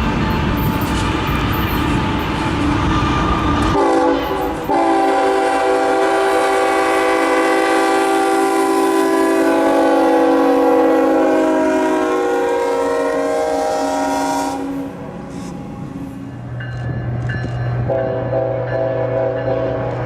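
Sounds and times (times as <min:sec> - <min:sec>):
train rumbling past: 0:00.0 - 0:20.0
locomotive air horn blasts: 0:03.7 - 0:15.4, 0:17.9 - 0:19.9.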